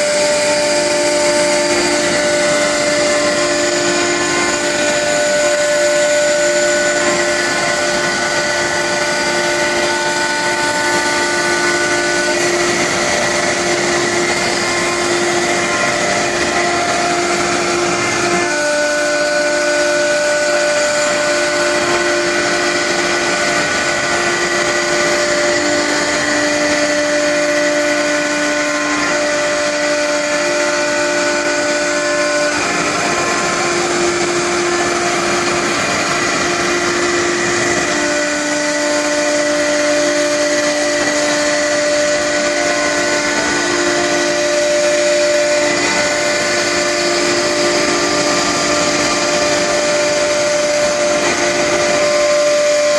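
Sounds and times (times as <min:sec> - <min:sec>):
cnc router machine noise: 0:00.0 - 0:52.9
high whining tones: 0:00.0 - 0:52.9.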